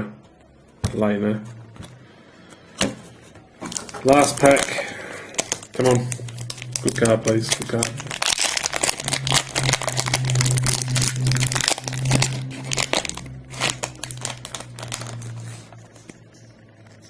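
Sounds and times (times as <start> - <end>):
wrapper crinkling and tearing: 3.6 - 15.9.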